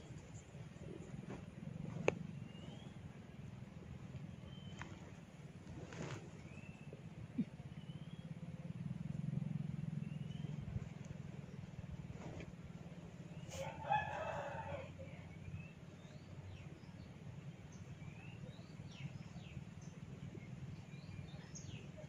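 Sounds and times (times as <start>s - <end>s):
steady low hum: 0.0s - 22.0s
faint bird chirps: 6.4s - 8.5s
rooster crowing: 13.5s - 15.1s.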